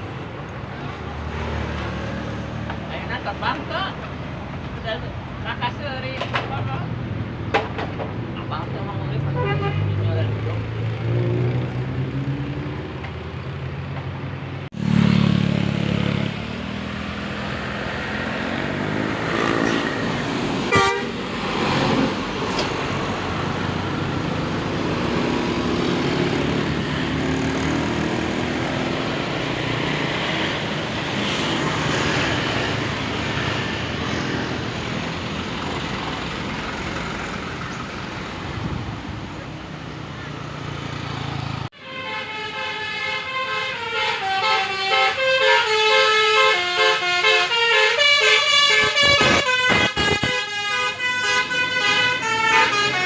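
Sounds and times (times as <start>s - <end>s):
engine and tyre noise: 0.0s - 53.0s
road traffic: 0.0s - 53.0s
bus multi-tone horn: 9.2s - 10.0s, 19.3s - 22.1s, 41.8s - 53.0s.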